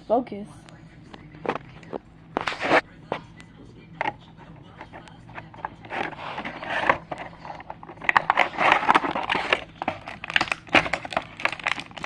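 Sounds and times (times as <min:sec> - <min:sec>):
toy box packaging handled: 0:04.8 - 0:12.0.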